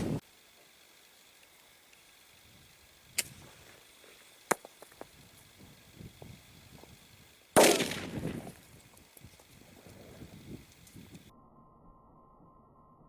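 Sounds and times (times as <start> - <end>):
sharp clicks: 1.2 - 11.3
airsoft grenade bang: 7.6 - 8.6.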